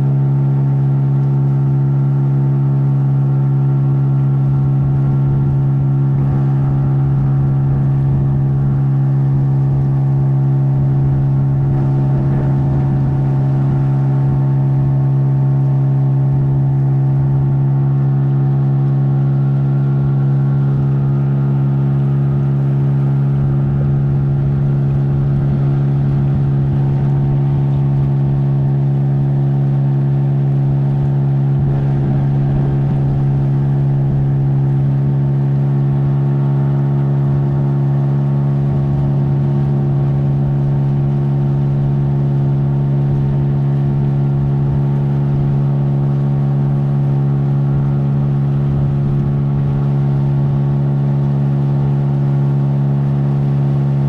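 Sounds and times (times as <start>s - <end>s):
outboard motor running steadily: 0.0s - 54.0s.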